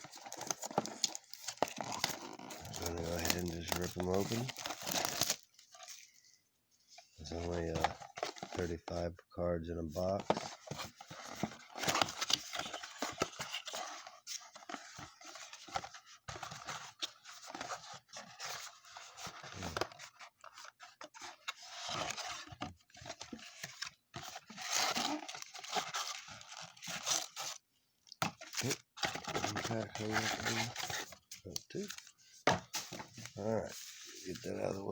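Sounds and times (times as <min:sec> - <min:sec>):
packaging being torn open: 0:00.2 - 0:05.5.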